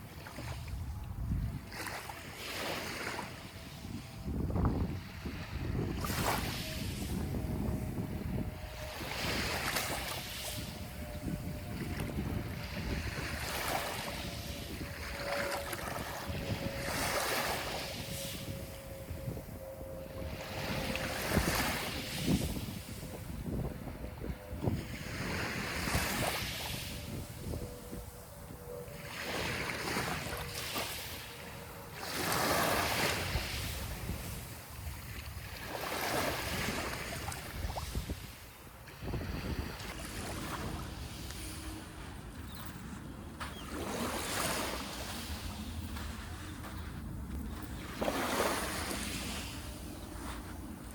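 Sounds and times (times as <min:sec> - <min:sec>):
faint steady tone: 0:00.0 - 0:50.9
wind buffeting microphone: 0:00.0 - 0:50.9.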